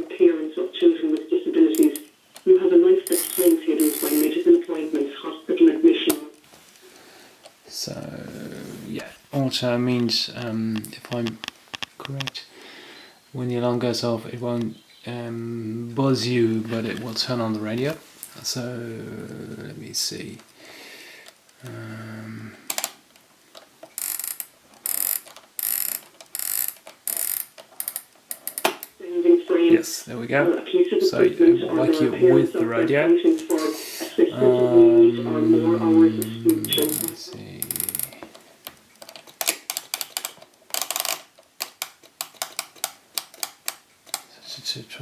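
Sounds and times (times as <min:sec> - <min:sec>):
alarm clock mechanism clicking: 0:24.0 - 0:28.6, 0:36.6 - 0:38.1
flip clock knob ratcheting: 0:24.0 - 0:28.9, 0:39.0 - 0:44.3.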